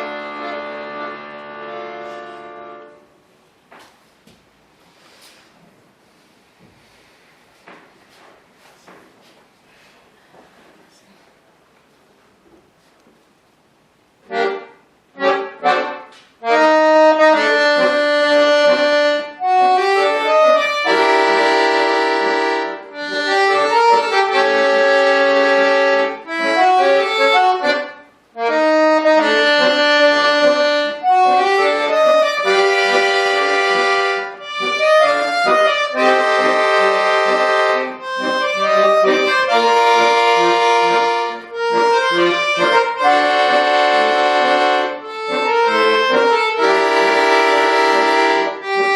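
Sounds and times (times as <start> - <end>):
button accordion playing chords: 0.0 - 3.2, 14.2 - 48.9.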